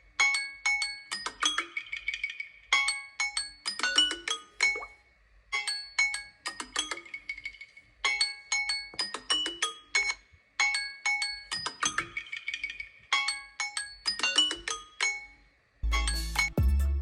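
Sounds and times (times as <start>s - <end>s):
phone ringtone melody: 15.8s - 17.0s.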